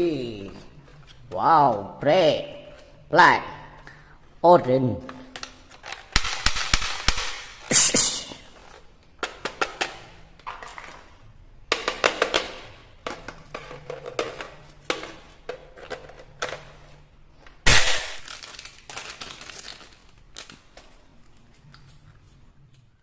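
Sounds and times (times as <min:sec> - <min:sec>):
plastic toys clicking and clattering: 0:05.4 - 0:08.0, 0:11.7 - 0:17.0
loud sharp crack: 0:06.1 - 0:08.1, 0:17.7 - 0:18.4.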